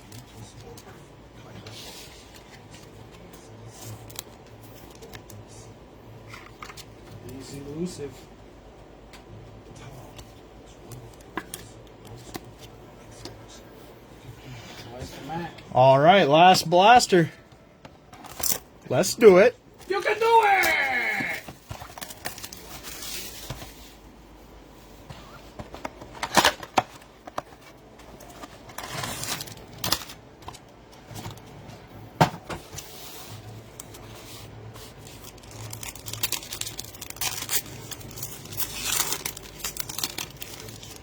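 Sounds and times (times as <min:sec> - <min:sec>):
wrappers crinkling and tearing: 0:19.9 - 0:23.4, 0:28.2 - 0:30.6, 0:33.3 - 0:41.0.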